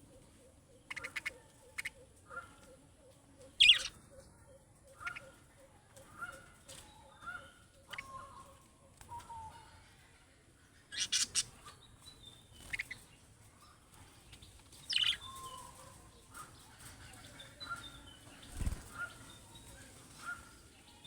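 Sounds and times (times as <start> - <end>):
budgerigars chirping and warbling: 0.2 - 2.7, 3.5 - 4.0, 4.9 - 5.4, 6.1 - 8.5, 10.7 - 13.2, 14.2 - 21.0.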